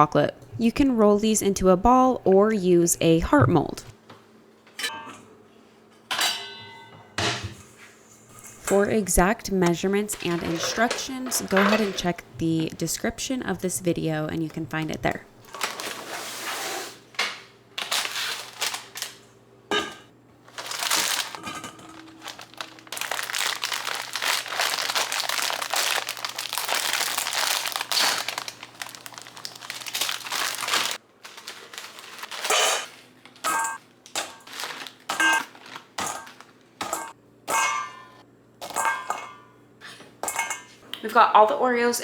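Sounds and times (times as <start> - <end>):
plastic packaging crinkling: 15.5 - 16.3, 17.8 - 19.3, 20.4 - 33.2, 34.1 - 36.6.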